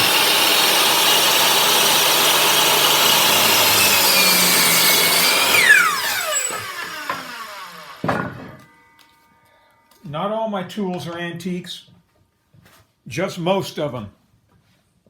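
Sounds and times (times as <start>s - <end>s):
motor winding down whine: 0.0s - 8.2s
power saw running: 0.0s - 9.1s
knock: 8.0s - 8.6s.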